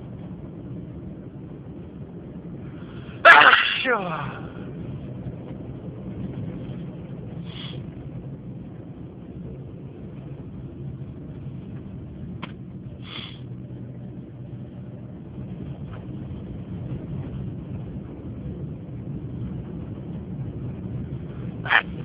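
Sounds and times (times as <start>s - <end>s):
low background rumble: 0.0s - 22.0s
person sniffing: 13.1s - 13.4s.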